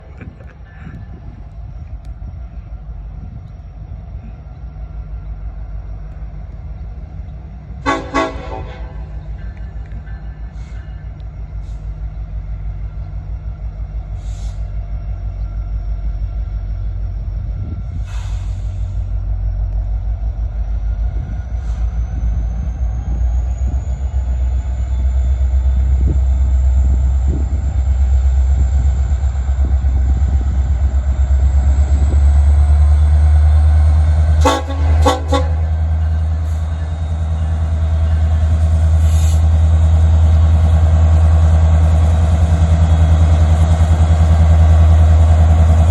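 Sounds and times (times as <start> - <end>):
large engine droning: 0.0 - 45.9
horn toots: 7.8 - 9.1, 34.4 - 35.8.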